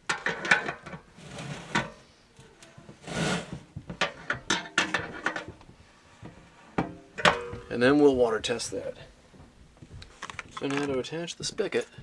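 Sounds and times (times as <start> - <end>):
metal scraping rub: 1.1 - 2.1, 3.0 - 3.7
metal clicks and knocks: 6.8 - 7.9.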